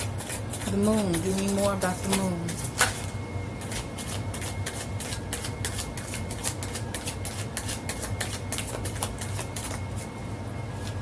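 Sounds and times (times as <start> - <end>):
low steady hum: 0.0 - 11.0
cards being shuffled: 3.7 - 10.1.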